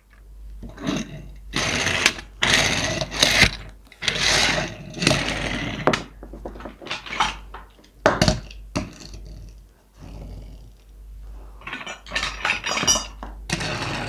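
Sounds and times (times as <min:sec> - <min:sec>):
packaging rustling and scraping: 0:05.4 - 0:08.0.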